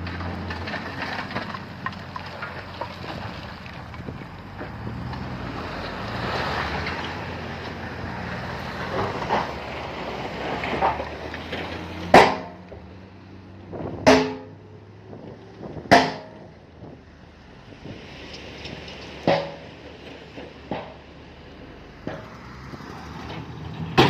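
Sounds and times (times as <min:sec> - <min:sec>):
diesel machinery running: 0:00.0 - 0:24.0
loud metallic clangs: 0:12.0 - 0:12.6, 0:13.9 - 0:14.7, 0:15.8 - 0:16.5.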